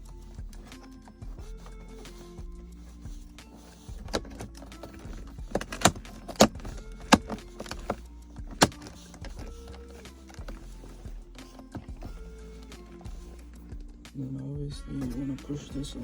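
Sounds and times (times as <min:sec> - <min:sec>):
plastic shift knob clicks and knocks: 0:04.0 - 0:10.6.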